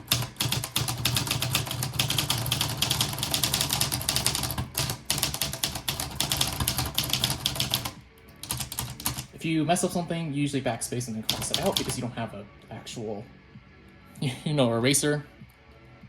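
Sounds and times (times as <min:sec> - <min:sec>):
manual typewriter typing: 0:00.0 - 0:09.3, 0:11.3 - 0:12.0.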